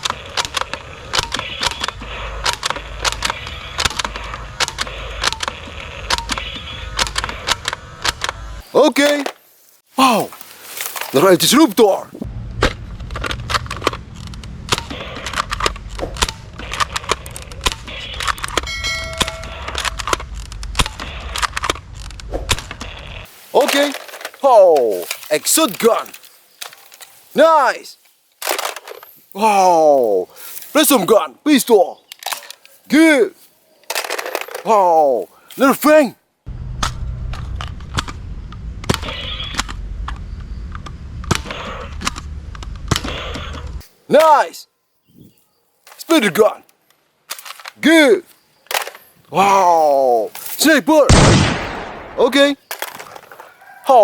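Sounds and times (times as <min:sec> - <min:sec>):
sharp clicks and knocks: 0:00.0 - 0:08.5
steady low rumble: 0:12.2 - 0:16.6, 0:36.5 - 0:43.0.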